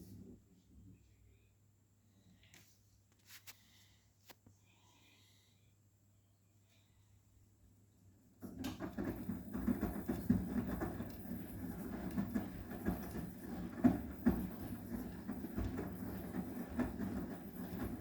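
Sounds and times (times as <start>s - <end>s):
washing machine drum turning: 8.4s - 18.0s.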